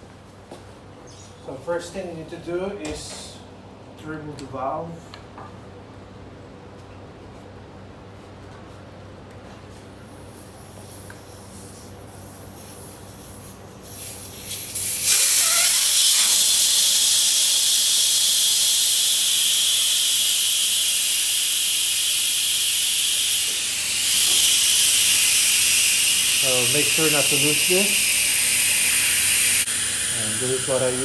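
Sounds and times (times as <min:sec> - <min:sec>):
air hissing from tyre valve: 0:10.2 - 0:31.0.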